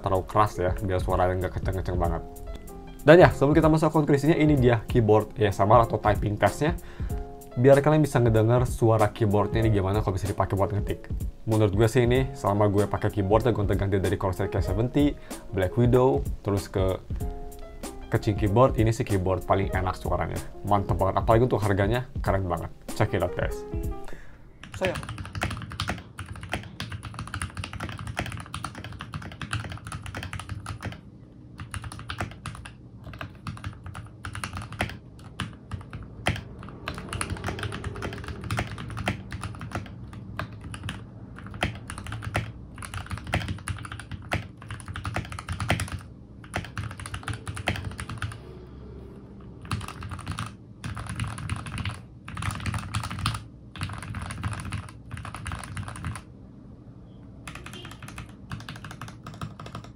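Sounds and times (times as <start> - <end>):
typing on mechanical keyboard: 24.6 - 31.0, 31.6 - 48.4, 49.6 - 56.3, 57.5 - 59.9.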